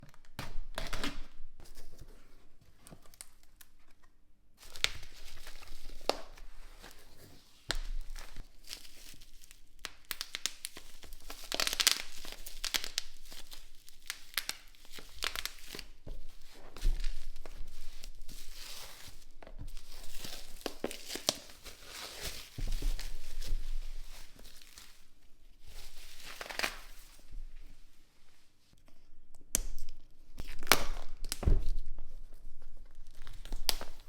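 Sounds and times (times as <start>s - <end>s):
packaging crinkling and tearing: 4.6s - 27.2s, 29.8s - 31.9s, 32.9s - 34.0s.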